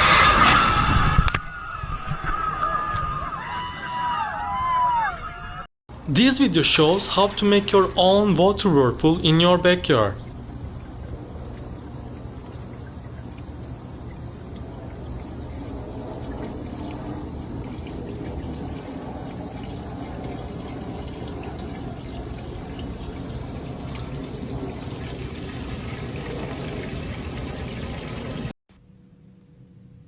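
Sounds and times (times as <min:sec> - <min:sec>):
water rushing and churning: 0:06.1 - 0:28.5.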